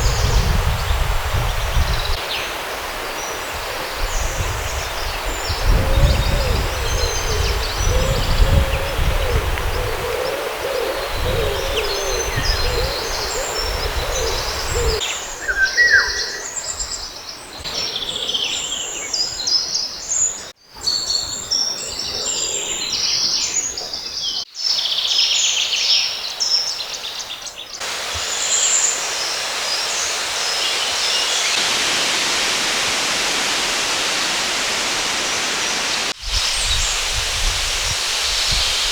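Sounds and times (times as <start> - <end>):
songbirds chirping: 0.0 - 31.6
low hooting bird call: 5.4 - 16.6.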